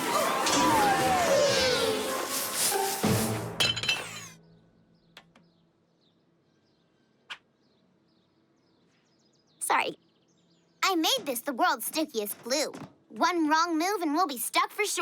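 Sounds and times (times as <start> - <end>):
cartoon noisy burst: 0.0 - 3.4.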